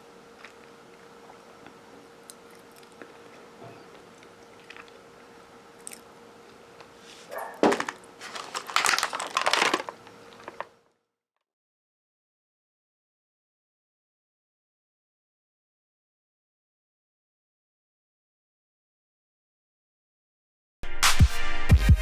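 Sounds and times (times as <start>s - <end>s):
faint steady hum: 0.0s - 10.9s
cookie crunching: 0.4s - 10.7s.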